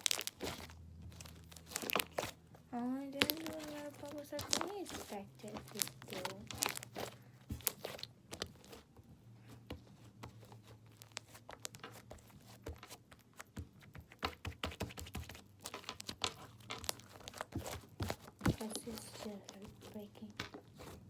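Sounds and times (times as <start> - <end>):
slime crackling and popping: 0.0 - 8.8, 10.8 - 21.0
faint low hum: 0.0 - 14.0.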